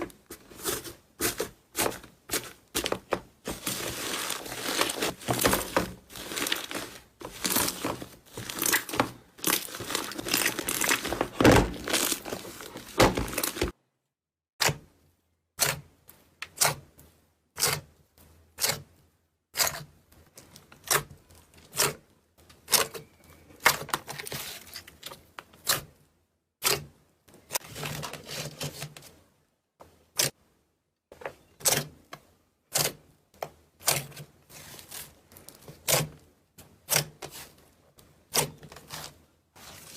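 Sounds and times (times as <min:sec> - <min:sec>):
slime squelching: 0:00.3 - 0:13.8.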